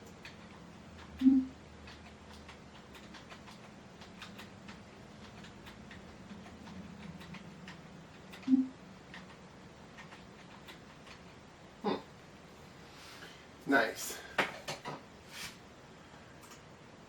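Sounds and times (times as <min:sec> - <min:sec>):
faint irregular clicking: 0:00.0 - 0:11.4
low steady hum: 0:00.0 - 0:17.0.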